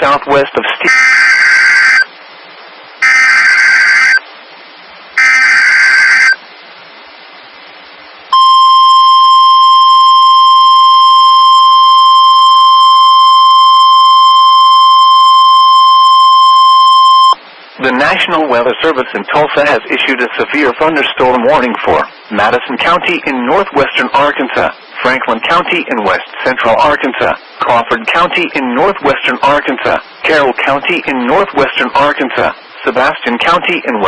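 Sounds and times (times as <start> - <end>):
warbling screechy data bursts: 0.8 - 2.1, 3.0 - 4.2, 5.2 - 6.4
steady warning alarm tone: 0.9 - 2.1, 3.0 - 4.2, 5.2 - 6.4, 8.4 - 17.4.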